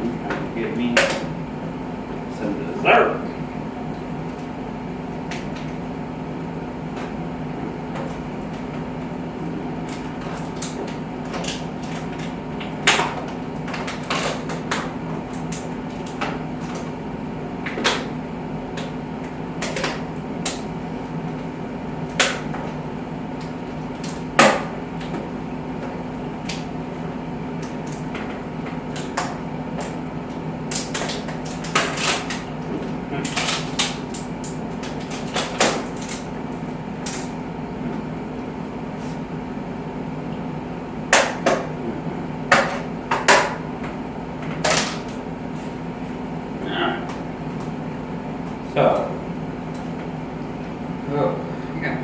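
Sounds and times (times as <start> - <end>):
steady low hum: 0.0 - 52.0.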